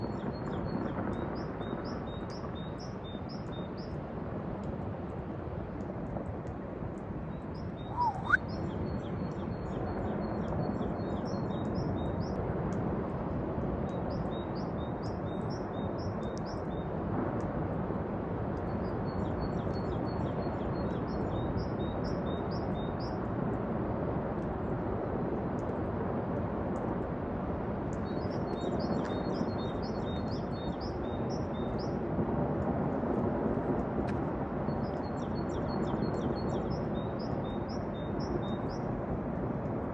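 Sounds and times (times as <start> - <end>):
small birds trilling: 7.8 - 8.4
short rising whistle: 7.9 - 8.4.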